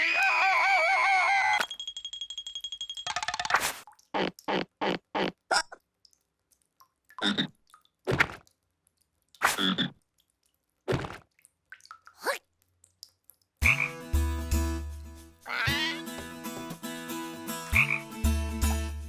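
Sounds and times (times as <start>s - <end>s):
cartoon croaking calls: 0.0s - 1.6s, 7.2s - 7.5s, 15.5s - 16.1s.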